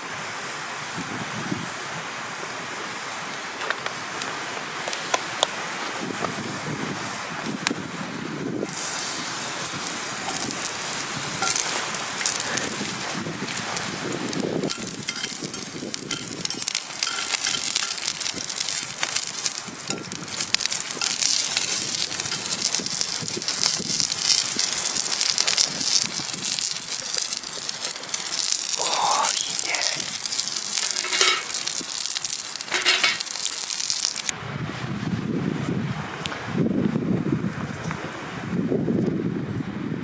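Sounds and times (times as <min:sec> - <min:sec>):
wind on microphone: 0:00.9 - 0:01.8, 0:05.9 - 0:27.1, 0:34.2 - 0:40.0
steak sizzling in a pan: 0:08.6 - 0:34.3.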